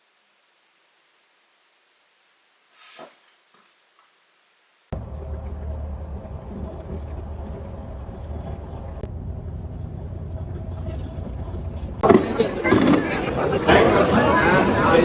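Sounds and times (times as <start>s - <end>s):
low rumble of road vehicles: 4.9s - 15.0s.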